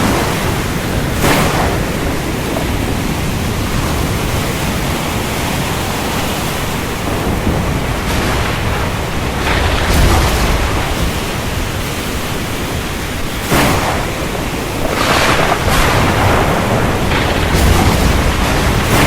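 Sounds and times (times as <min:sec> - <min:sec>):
heavy rain hissing: 0:00.0 - 0:19.0
low rumble: 0:13.8 - 0:19.0.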